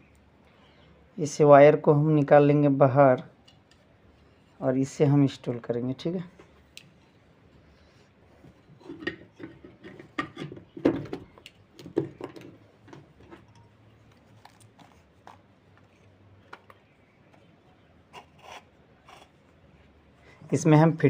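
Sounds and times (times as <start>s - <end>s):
fan motor parts clicking and knocking: 8.4s - 13.8s.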